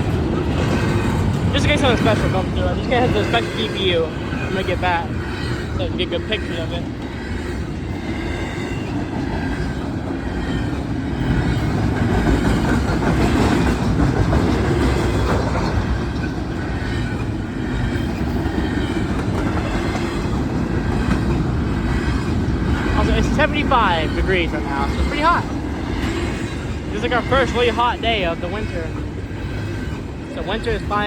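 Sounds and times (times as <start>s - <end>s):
freight train rumbling past: 0.0s - 31.0s
wheels clacking over rail joints: 0.0s - 31.0s.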